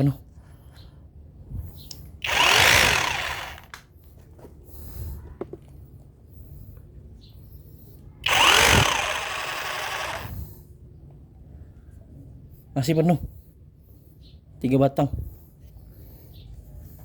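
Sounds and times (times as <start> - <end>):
rotary hammer motor spinning: 2.2 - 3.8, 8.2 - 10.5.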